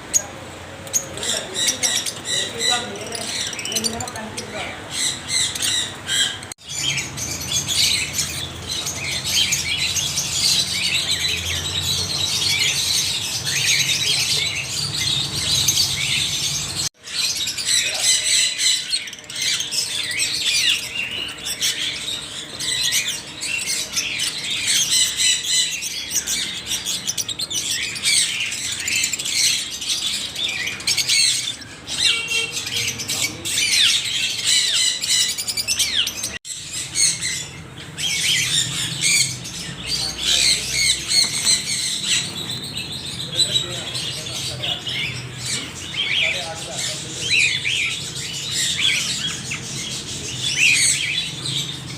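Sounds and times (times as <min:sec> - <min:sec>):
parrots chattering and squawking: 0:00.0 - 0:51.9.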